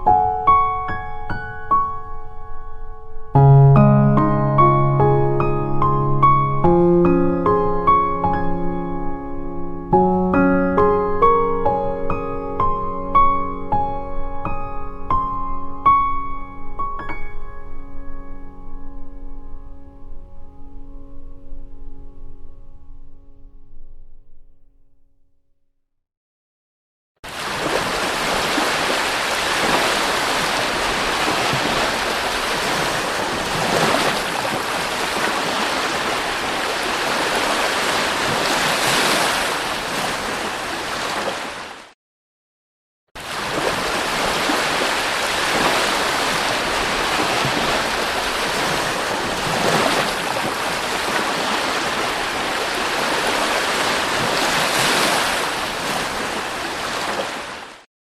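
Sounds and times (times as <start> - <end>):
sea surf breaking on shore: 27.3 - 42.0, 43.2 - 57.9.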